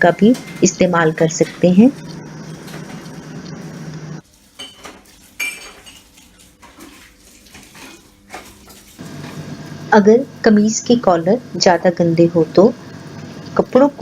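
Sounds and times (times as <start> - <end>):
low hum: 0.0 - 4.2.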